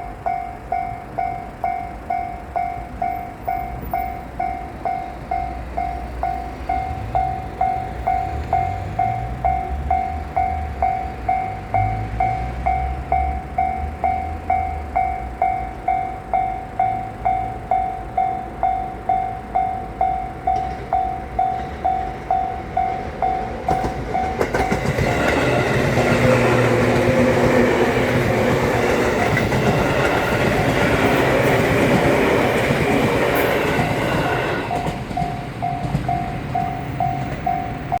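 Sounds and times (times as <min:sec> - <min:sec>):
freight train rumble: 0:00.0 - 0:38.0
level-crossing warning bell ringing: 0:00.0 - 0:38.0
train wheels clattering on rails: 0:00.0 - 0:38.0.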